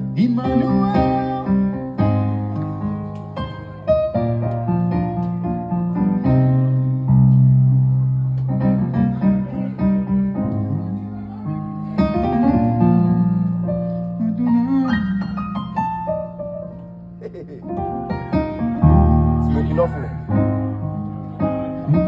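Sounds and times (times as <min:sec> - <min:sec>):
keyboard chords with bass notes: 0:15.5 - 0:22.0.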